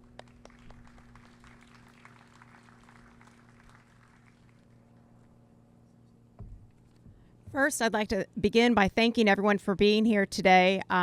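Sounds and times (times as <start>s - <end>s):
faint scattered applause: 0.0s - 4.9s
low electrical hum: 0.0s - 11.0s.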